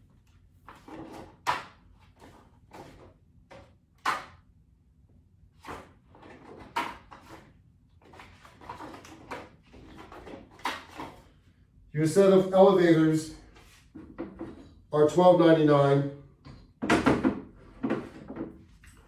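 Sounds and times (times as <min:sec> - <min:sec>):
objects knocking on hard surface: 0:13.9 - 0:14.7, 0:16.4 - 0:18.7.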